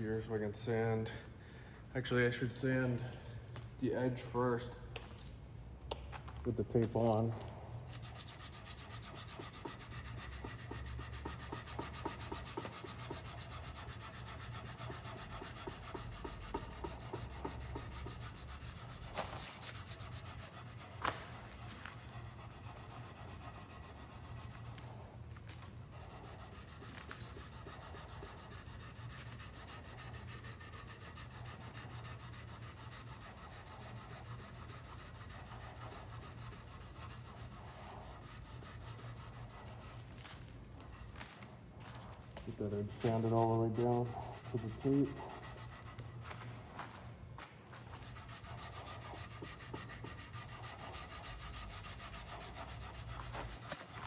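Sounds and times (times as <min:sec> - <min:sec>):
sandpaper rasping on epoxy: 0:07.9 - 0:24.9, 0:26.0 - 0:40.1, 0:42.6 - 0:46.8, 0:47.9 - 0:54.0.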